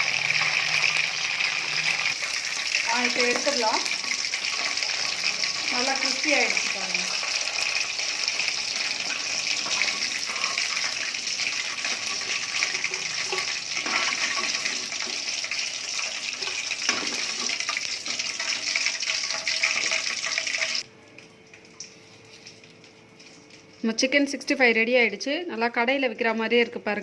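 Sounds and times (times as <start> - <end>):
chicken sizzling in hot oil: 0.0 - 20.8.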